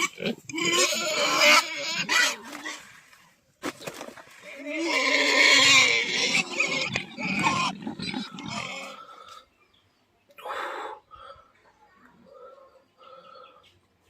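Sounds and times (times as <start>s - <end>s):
pigs squealing: 0.0s - 2.8s, 4.4s - 9.3s
pigs grunting: 0.0s - 3.0s, 4.4s - 9.4s.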